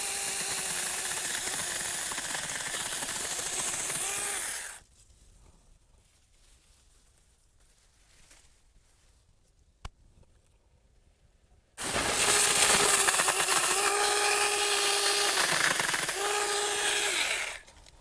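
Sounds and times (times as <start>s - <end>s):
electric chainsaw cutting branches: 0.0s - 4.8s, 11.8s - 17.7s.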